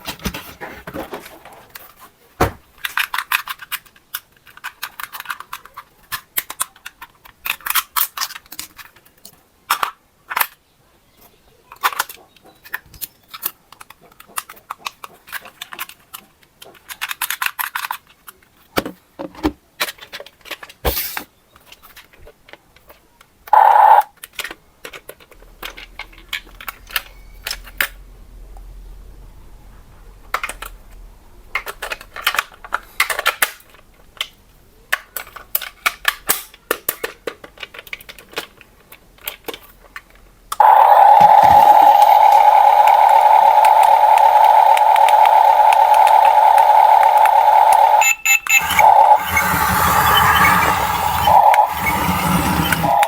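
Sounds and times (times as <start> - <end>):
plastic toy parts rattling: 2.8 - 10.6, 11.7 - 18.6, 19.8 - 23.0, 24.2 - 27.8, 31.5 - 40.2
loud steady tone: 23.6 - 24.1, 40.6 - 53.0
short electronic tone: 23.6 - 24.1, 40.6 - 53.0.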